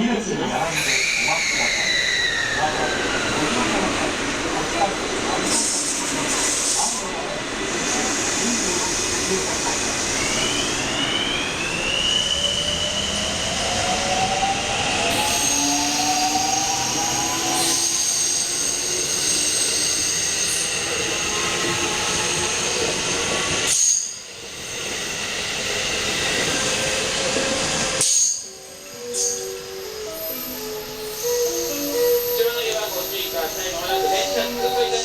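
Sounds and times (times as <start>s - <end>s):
train motor whine: 7.9s - 35.0s.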